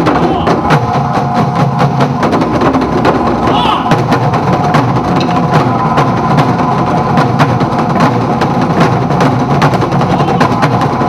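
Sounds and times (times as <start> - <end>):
sustained droning: 0.0 - 8.5
sharp percussive hits: 0.0 - 11.0.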